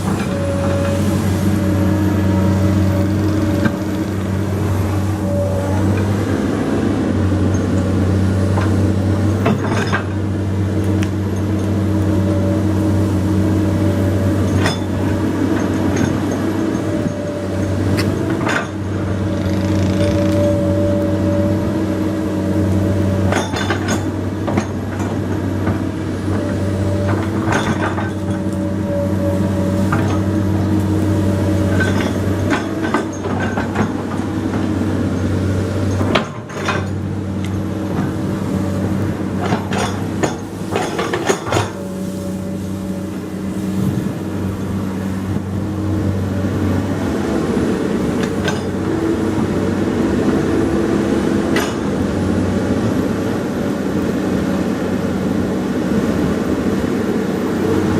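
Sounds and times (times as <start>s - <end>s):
high whine: 0.0s - 9.4s
excavator diesel engine running: 0.0s - 57.9s.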